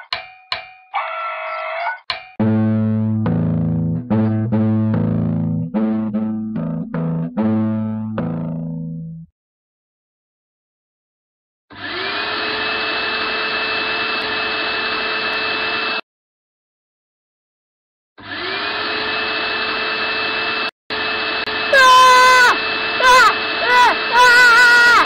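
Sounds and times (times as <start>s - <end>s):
vacuum cleaner motor running: 11.7s - 16.0s, 18.2s - 24.7s.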